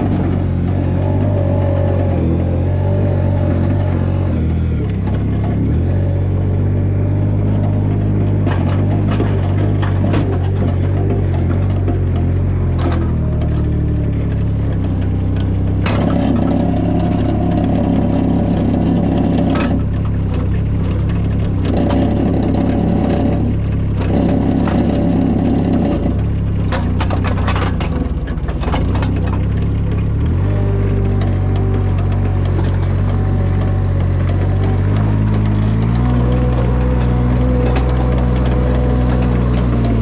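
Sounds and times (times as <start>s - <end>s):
knocks and rattles: 0.0s - 40.0s
loader engine revving: 0.0s - 40.0s.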